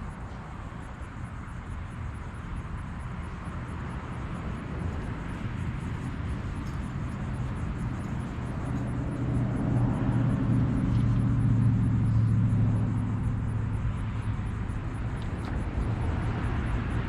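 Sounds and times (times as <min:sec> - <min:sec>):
vehicle engine passing by: 0:05.4 - 0:17.0.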